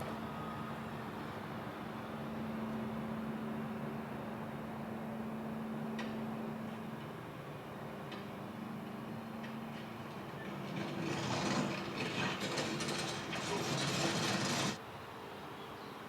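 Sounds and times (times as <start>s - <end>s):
construction machinery engine hum: 0.0s - 14.8s
mechanical grinding and clattering: 10.4s - 14.8s.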